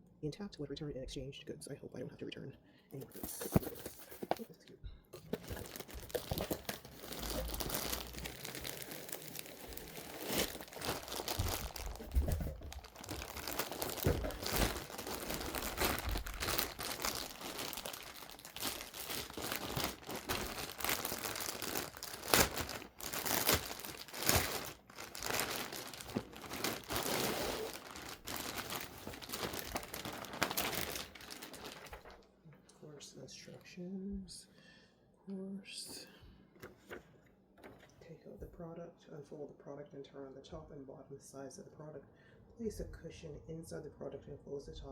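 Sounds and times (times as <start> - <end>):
packaging crinkling and rustling: 3.0 - 4.5, 5.2 - 32.3.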